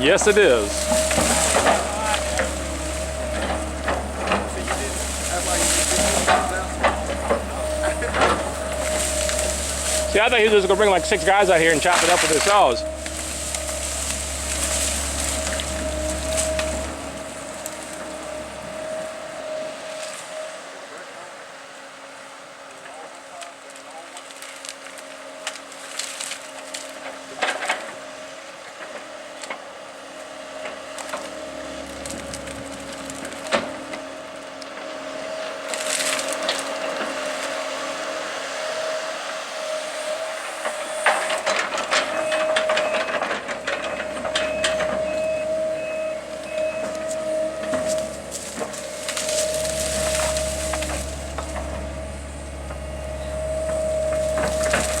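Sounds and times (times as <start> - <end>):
wood cracking and splintering: 0.0 - 20.4, 22.7 - 55.0
heavy machinery drone: 0.0 - 55.0
low rumble: 42.2 - 55.0.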